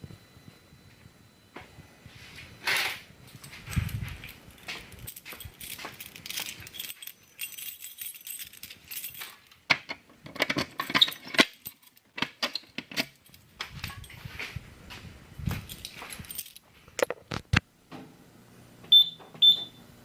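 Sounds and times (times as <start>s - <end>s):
light metallic jingling: 3.3s - 9.7s, 10.4s - 14.4s, 15.5s - 16.7s.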